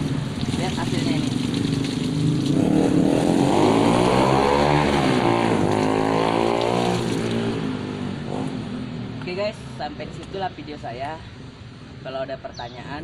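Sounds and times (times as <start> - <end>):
electric water pump running: 0.0 - 3.3, 5.7 - 7.6.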